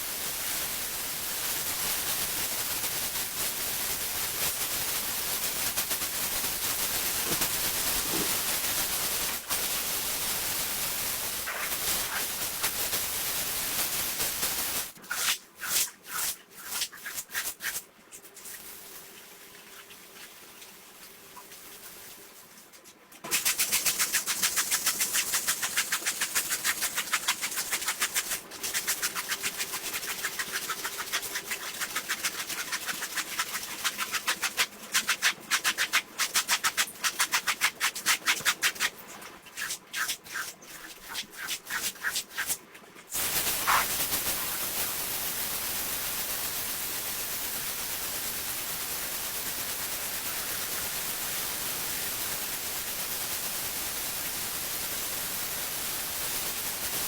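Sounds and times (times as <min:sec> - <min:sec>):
steady hiss: 0:00.0 - 0:22.4, 0:23.3 - 0:57.0
brush scrubbing carpet: 0:05.4 - 0:09.8, 0:11.4 - 0:12.9, 0:13.9 - 0:17.8, 0:23.3 - 0:45.1.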